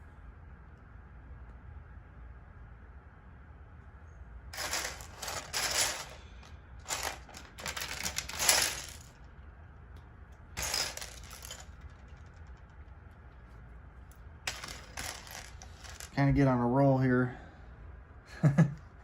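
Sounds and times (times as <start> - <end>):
plastic pieces clattering: 4.6 - 9.1, 10.6 - 12.3, 14.5 - 16.2.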